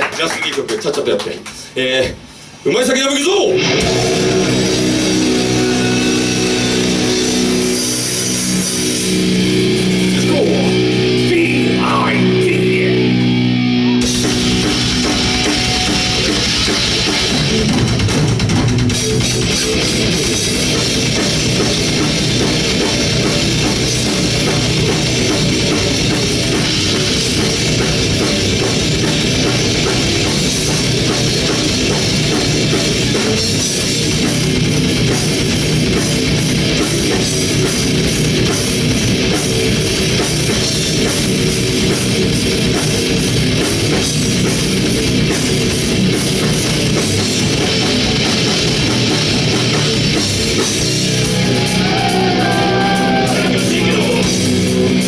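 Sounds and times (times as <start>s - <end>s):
live rock band playing: 3.5s - 55.0s
ringing guitar chords: 3.6s - 18.0s.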